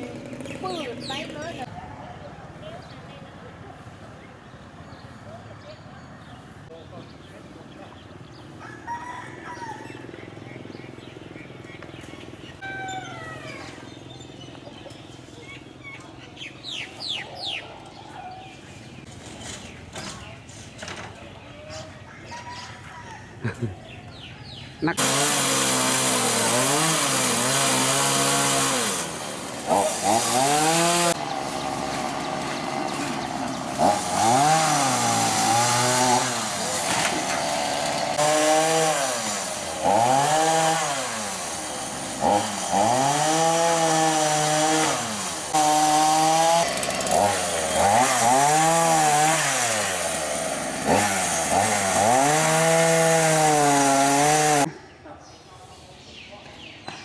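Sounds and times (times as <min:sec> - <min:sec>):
chainsaw engine revving: 0:00.0 - 0:01.7, 0:25.0 - 0:54.7.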